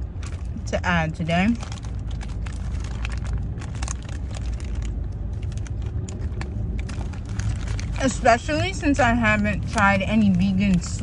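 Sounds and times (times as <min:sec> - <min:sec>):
car cabin rumble: 0:00.0 - 0:11.0
chewing clicks and crunches: 0:01.6 - 0:08.2.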